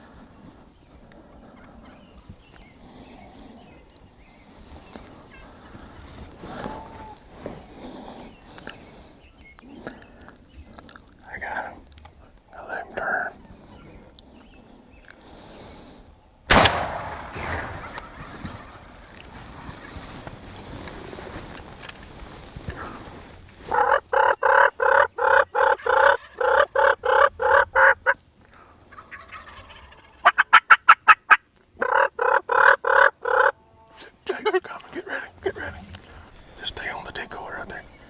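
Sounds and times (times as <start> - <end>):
turkey rattling gobble: 17.4 - 20.1, 23.7 - 28.2, 28.9 - 33.6
turkey yelps: 23.7 - 28.2, 28.9 - 33.6.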